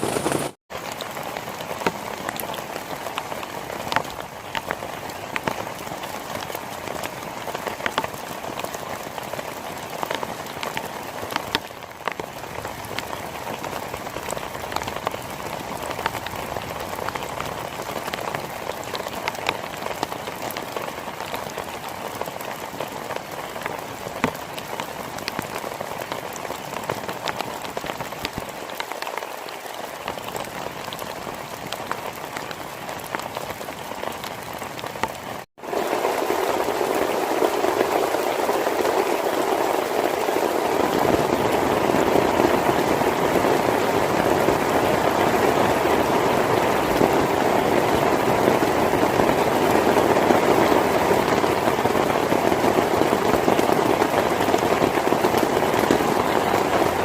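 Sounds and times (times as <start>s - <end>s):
heavy rain falling: 0.0s - 57.0s
raindrops ticking: 0.8s - 57.0s.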